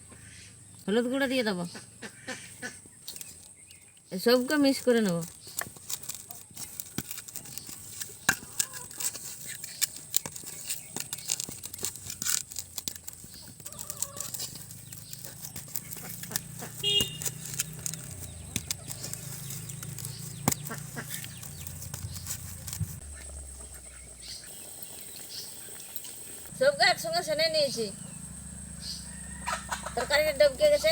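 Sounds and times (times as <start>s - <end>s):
chicken clucking: 13.7s - 14.8s, 29.0s - 30.4s.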